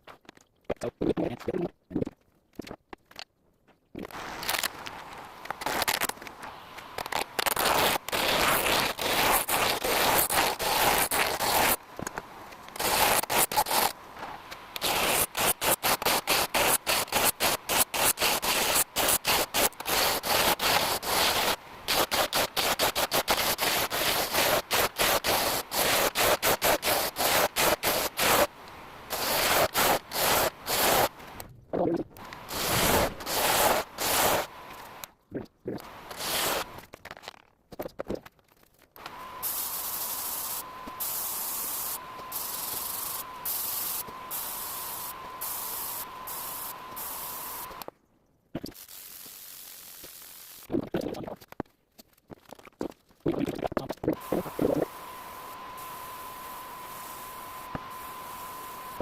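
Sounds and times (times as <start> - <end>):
tool scraping and cutting wood: 32.2 - 35.1.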